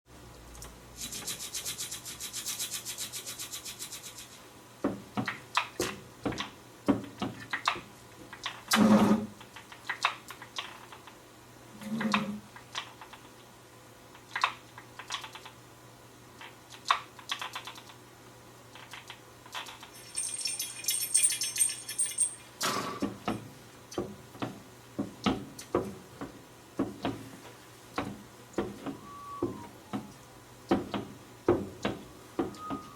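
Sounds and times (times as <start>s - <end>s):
fast high rattle: 19.6s - 22.5s.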